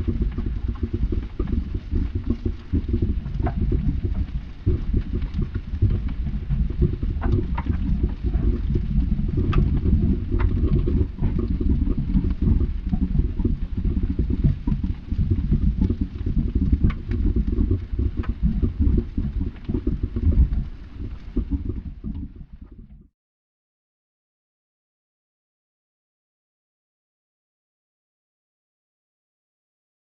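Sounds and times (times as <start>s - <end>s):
rough low rumble: 0.0s - 23.1s.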